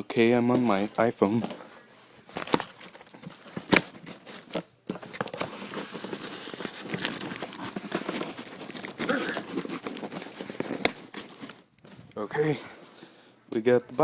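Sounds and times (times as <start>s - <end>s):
packing material crinkling: 2.2s - 13.1s
cardboard and tape tearing: 2.3s - 11.7s.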